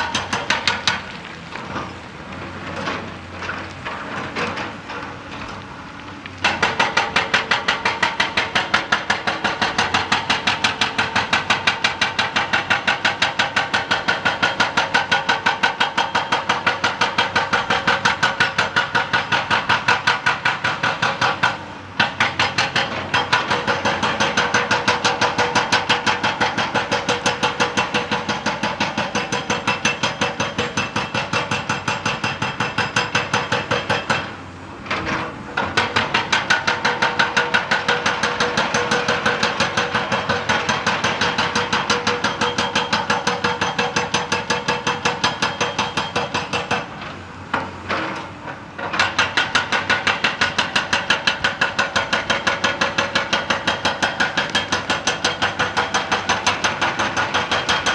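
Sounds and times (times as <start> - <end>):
hydraulic rock breaker hammering: 0.0 - 2.0, 6.4 - 57.9.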